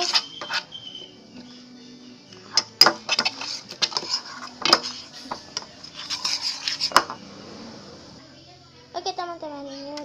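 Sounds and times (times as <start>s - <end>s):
stick scraping a container: 0.0s - 0.8s, 2.5s - 7.2s.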